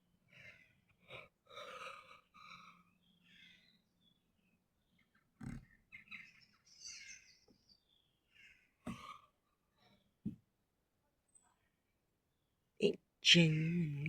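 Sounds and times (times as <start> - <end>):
faint bird chirps: 1.6 - 10.2.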